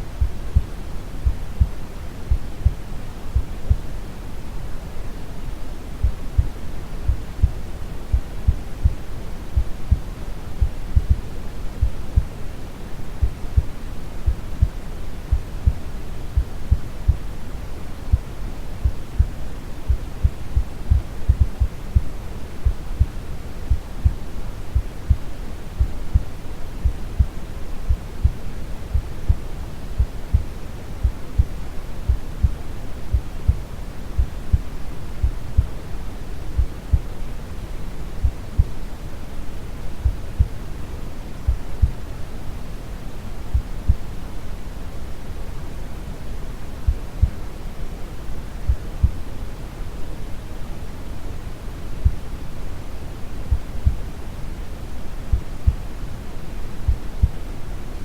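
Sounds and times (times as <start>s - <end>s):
heartbeat thumps: 0.0s - 3.9s, 6.0s - 12.4s, 13.2s - 15.8s, 16.4s - 17.3s, 18.1s - 23.1s, 23.7s - 35.8s, 36.6s - 37.2s, 38.2s - 38.8s, 41.5s - 42.0s, 43.5s - 44.0s, 46.9s - 47.4s, 48.7s - 49.2s, 53.5s - 54.1s, 55.3s - 55.9s, 56.9s - 57.4s
brown noise rumbling hiss: 0.0s - 58.0s.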